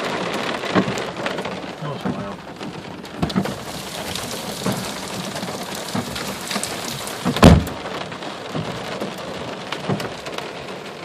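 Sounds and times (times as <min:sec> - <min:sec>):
hailstones knocking: 0:00.0 - 0:11.0
heavy rain hiss: 0:00.0 - 0:11.0
loud thump: 0:06.9 - 0:07.8.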